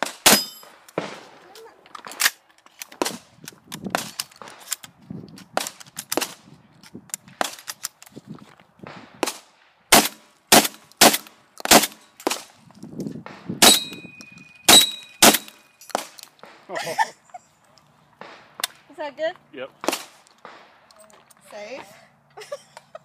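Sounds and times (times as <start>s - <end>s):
shotgun shots: 0.0s - 1.4s, 8.8s - 12.5s, 13.3s - 14.0s, 14.7s - 16.6s, 19.8s - 20.9s
metallic ring: 0.3s - 0.8s, 13.7s - 16.0s.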